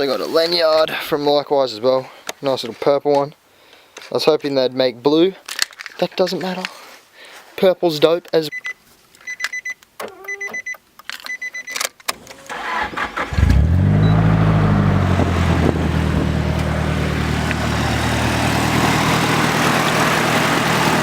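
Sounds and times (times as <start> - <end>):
short electronic beeps: 8.5 - 11.8, 14.0 - 14.2
car engine starting and idling: 12.1 - 21.0.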